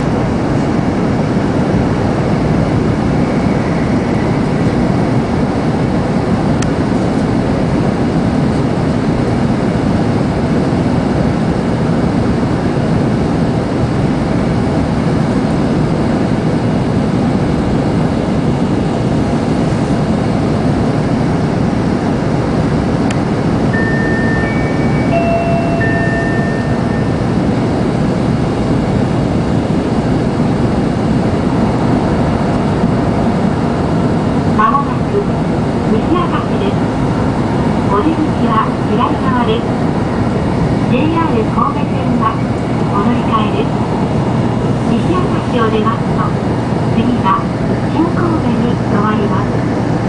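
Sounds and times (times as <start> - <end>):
train running noise: 0.0 - 50.0
electronic station chime: 23.7 - 27.8.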